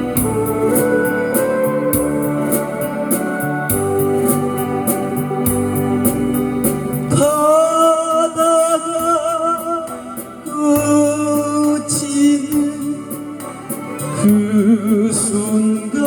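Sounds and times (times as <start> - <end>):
backing accompaniment: 0.0 - 8.2
person singing with vibrato: 0.0 - 16.0.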